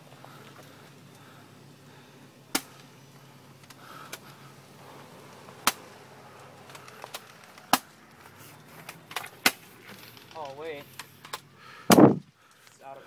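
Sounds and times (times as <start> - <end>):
airsoft gun shots: 11.9 - 12.2.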